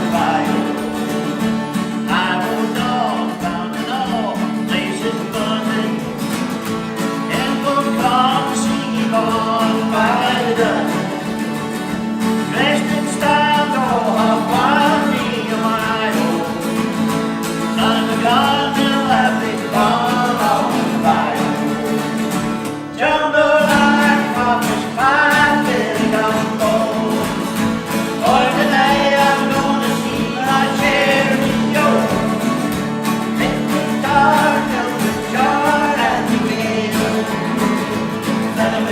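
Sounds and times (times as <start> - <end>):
strummed acoustic guitar: 0.0 - 38.9.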